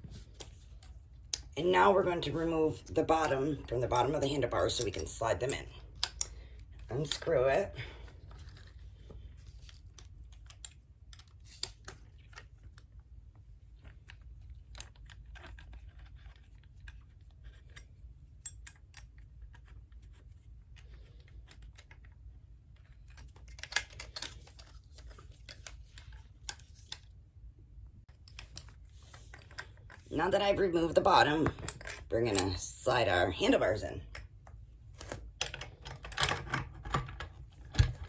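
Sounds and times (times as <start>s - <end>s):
small clicks of unscrewing parts: 5.5s - 6.9s, 8.1s - 13.0s, 13.7s - 27.1s, 28.1s - 30.1s.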